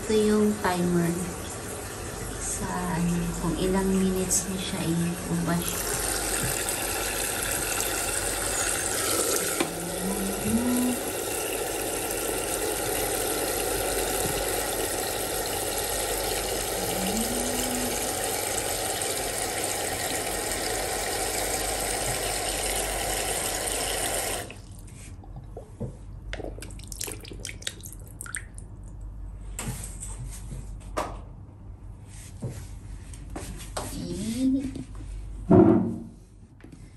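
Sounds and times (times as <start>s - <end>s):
washing machine motor hum: 0.0s - 30.8s
churning water: 0.8s - 24.6s.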